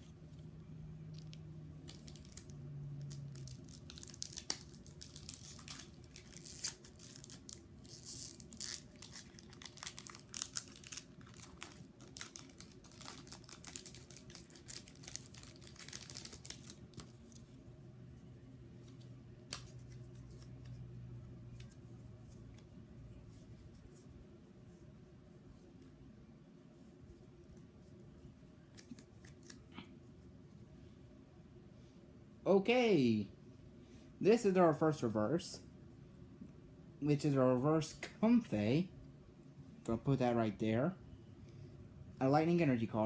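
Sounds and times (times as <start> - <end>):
cards rustling: 1.2 - 2.5, 3.1 - 17.5
foil wrapper crinkling and tearing: 1.2 - 17.4.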